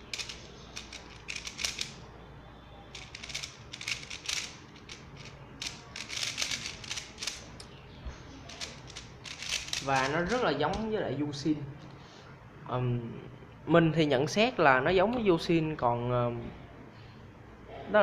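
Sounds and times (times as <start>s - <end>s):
speed cube clicking and scraping: 0.0s - 2.0s, 2.9s - 7.6s, 8.5s - 10.4s.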